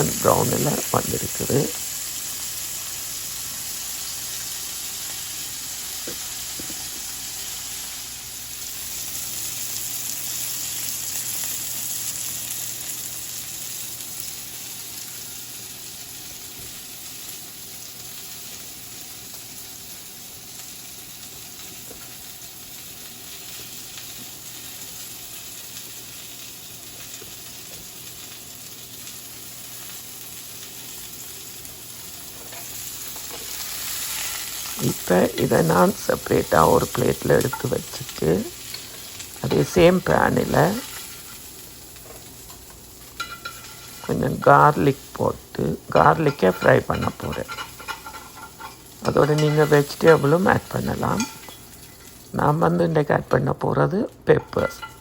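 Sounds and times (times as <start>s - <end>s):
crab frying in hot oil: 0.0s - 55.0s.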